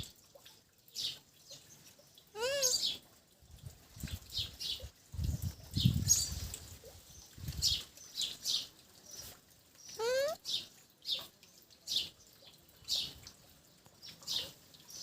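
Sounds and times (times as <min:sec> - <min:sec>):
parakeet high chirps: 0:02.4 - 0:03.0, 0:10.0 - 0:10.4.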